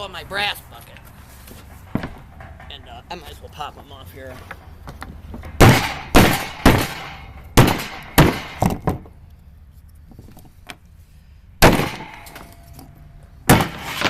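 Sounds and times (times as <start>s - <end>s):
hammer strikes: 5.4s - 9.0s.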